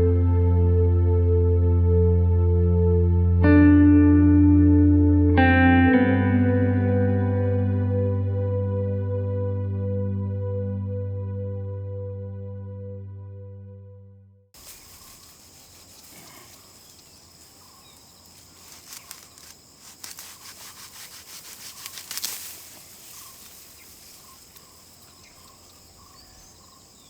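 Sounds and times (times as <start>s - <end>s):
high insect trill: 14.6s - 27.0s
quick rustling scrapes: 18.5s - 23.6s.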